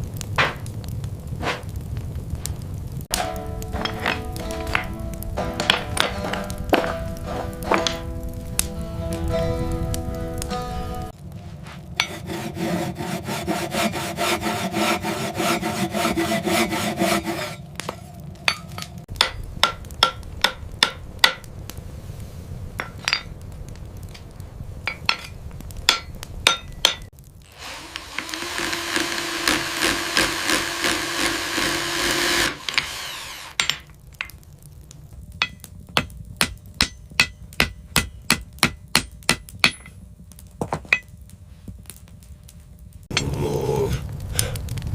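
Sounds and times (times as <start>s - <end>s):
file scraping: 11.6s - 17.6s.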